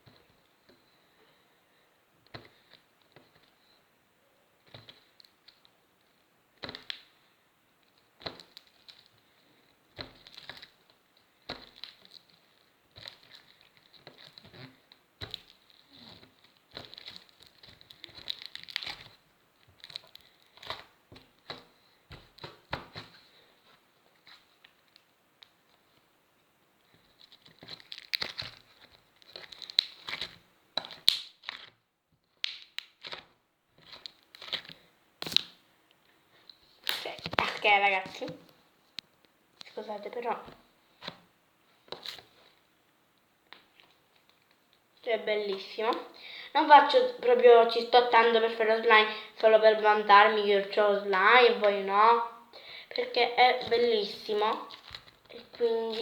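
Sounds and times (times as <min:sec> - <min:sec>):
putty crackling and popping: 0:06.6 - 0:07.1, 0:07.9 - 0:09.1, 0:09.9 - 0:23.2, 0:26.8 - 0:42.6, 0:43.4 - 0:56.0.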